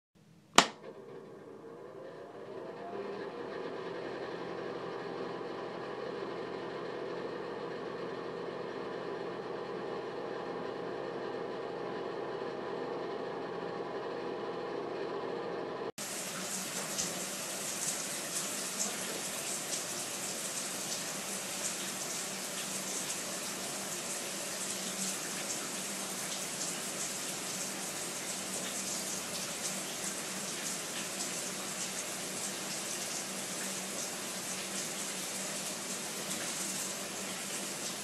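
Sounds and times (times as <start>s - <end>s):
shower spray hissing and splashing: 16.0s - 38.0s.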